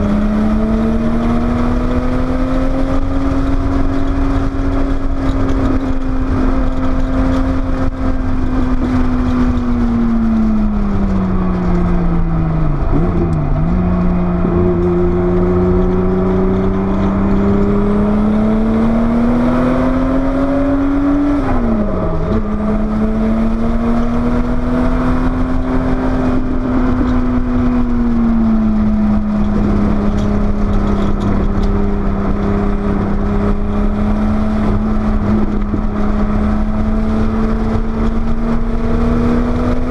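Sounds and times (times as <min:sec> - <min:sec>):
car engine revving: 0:00.0 - 0:39.9
road rumble: 0:00.0 - 0:39.9
wind noise: 0:00.0 - 0:39.9.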